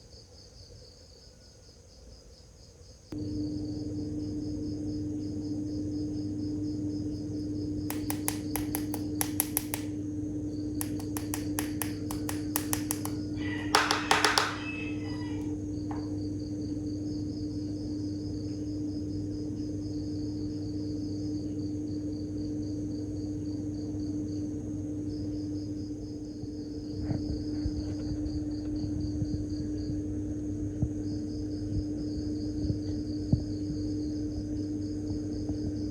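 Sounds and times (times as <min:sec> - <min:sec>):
crickets chirping: 0:00.0 - 0:35.9
constant low hum: 0:03.1 - 0:35.9
rapid sharp clicks: 0:07.8 - 0:10.0, 0:10.7 - 0:14.6.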